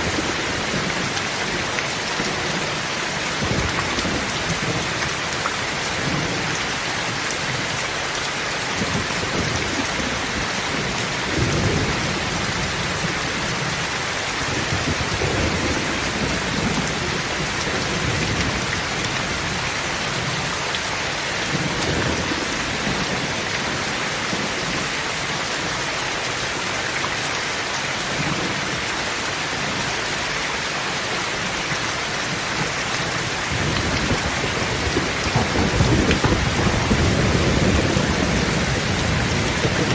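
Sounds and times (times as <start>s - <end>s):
heavy rain falling: 0.0s - 39.9s
thunder rumbling: 8.8s - 20.5s, 32.2s - 39.9s.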